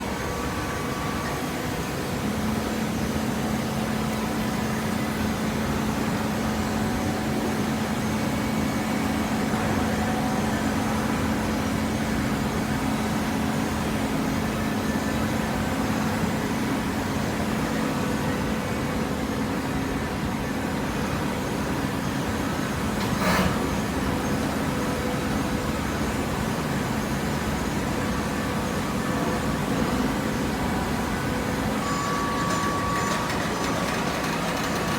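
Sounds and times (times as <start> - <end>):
baler mechanical hum: 0.0 - 34.9.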